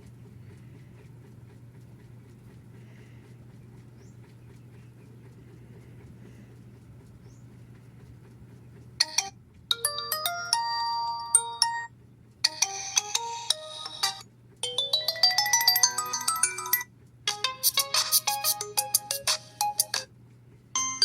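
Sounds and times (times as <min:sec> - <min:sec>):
phone ringtone melody: 0:09.0 - 0:11.9, 0:12.5 - 0:20.1, 0:20.8 - 0:21.0.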